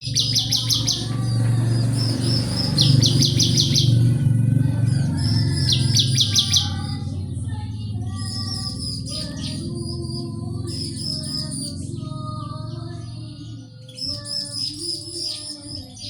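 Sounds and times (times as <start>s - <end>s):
bird calling high notes: 0.0s - 7.4s
softer bird calls: 0.0s - 12.4s
steady low hum: 0.0s - 15.8s.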